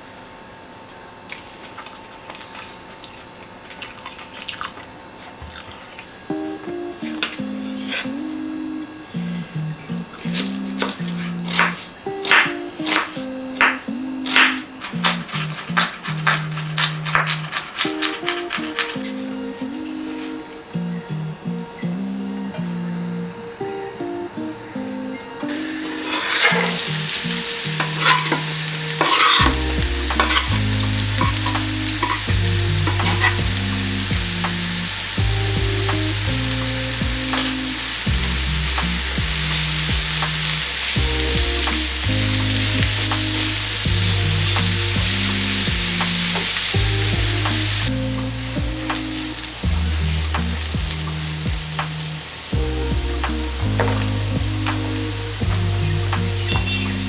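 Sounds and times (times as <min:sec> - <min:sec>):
food sizzling in oil: 0:10.2 - 0:20.4, 0:25.5 - 0:57.0
spatula scraping a pan: 0:14.4 - 0:20.4, 0:25.7 - 0:35.1
background music with bass line: 0:25.4 - 0:57.0.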